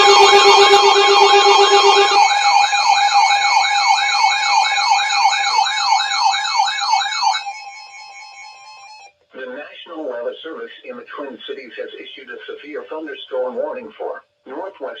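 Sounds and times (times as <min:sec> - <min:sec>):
low pulsing beep: 0:00.0 - 0:03.0
steady high tones: 0:00.0 - 0:07.6
warbling electronic siren: 0:00.0 - 0:09.1.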